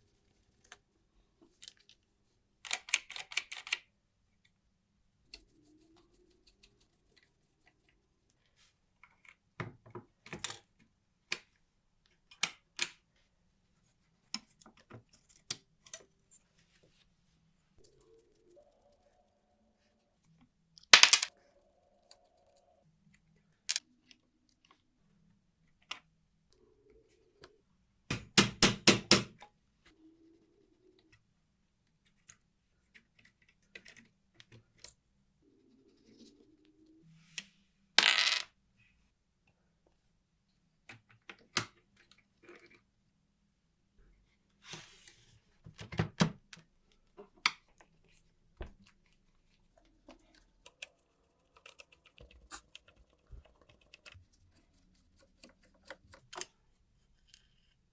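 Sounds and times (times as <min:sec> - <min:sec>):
rattling ticks: 0:49.8 - 0:56.2.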